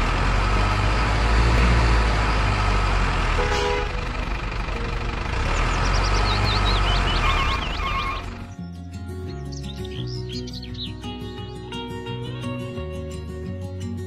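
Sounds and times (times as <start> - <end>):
truck engine rumble: 0.0 - 8.7
truck horn toot: 3.2 - 4.2, 5.3 - 8.5
high bird chirps: 5.5 - 11.1.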